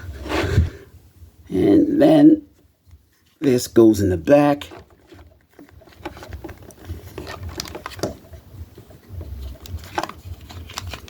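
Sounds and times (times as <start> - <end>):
plastic parts clicking and tapping: 4.7 - 11.0.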